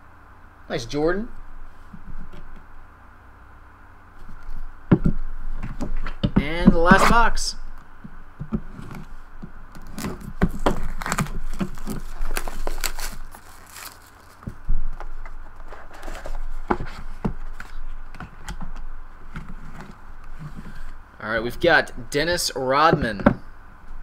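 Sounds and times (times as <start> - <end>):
plastic wrap crinkling: 9.8 - 14.6
box and cards handled: 9.8 - 18.4.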